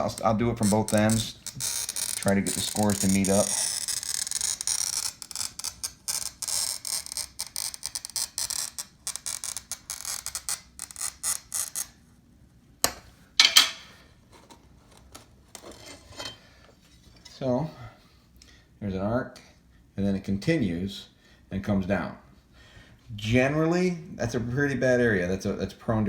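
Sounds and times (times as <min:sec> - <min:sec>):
glass cutter scoring glass: 0:00.0 - 0:12.0
sharp scratches on glass: 0:00.0 - 0:12.0.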